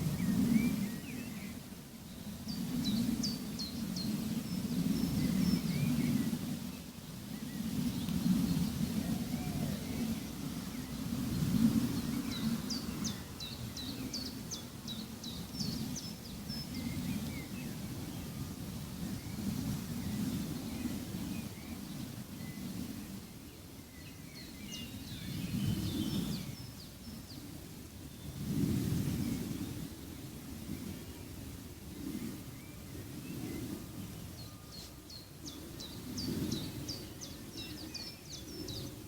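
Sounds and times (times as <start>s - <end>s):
low rumbling wash: 0.0s - 23.5s
songbirds chirping: 0.0s - 28.4s, 29.3s - 39.0s.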